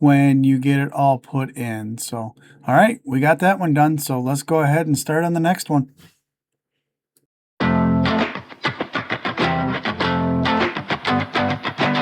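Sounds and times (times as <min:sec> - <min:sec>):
guitar music: 0:07.6 - 0:12.0.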